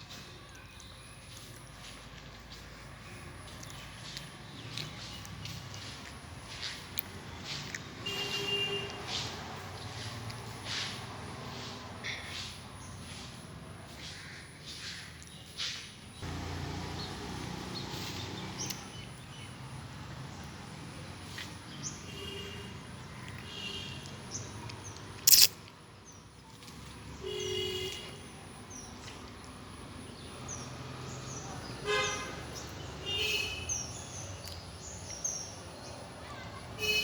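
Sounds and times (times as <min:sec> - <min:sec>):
outdoor street noise: 0:00.0 - 0:37.0
small birds chirping: 0:00.0 - 0:37.0
sharp loud click: 0:25.3 - 0:25.6.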